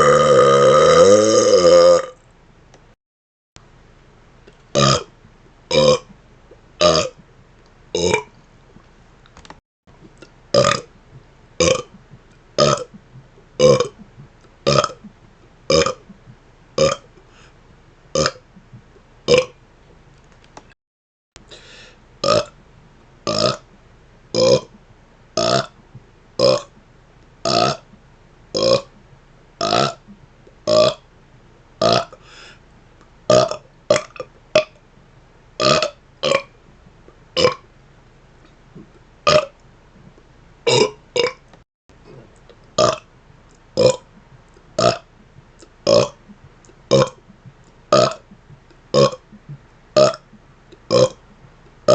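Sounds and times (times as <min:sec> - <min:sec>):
man burping: 0:00.0 - 0:02.2, 0:04.8 - 0:05.1, 0:05.7 - 0:06.1, 0:06.8 - 0:07.2, 0:08.0 - 0:08.3, 0:10.6 - 0:10.8, 0:11.6 - 0:12.0, 0:12.6 - 0:12.9, 0:13.6 - 0:14.0, 0:14.7 - 0:15.0, 0:15.7 - 0:16.1, 0:16.8 - 0:17.0, 0:18.2 - 0:18.4, 0:23.3 - 0:23.6, 0:24.4 - 0:24.7, 0:26.4 - 0:26.7, 0:28.6 - 0:28.9, 0:45.9 - 0:46.2, 0:46.9 - 0:47.2, 0:48.9 - 0:49.3, 0:50.0 - 0:50.3, 0:50.9 - 0:51.2.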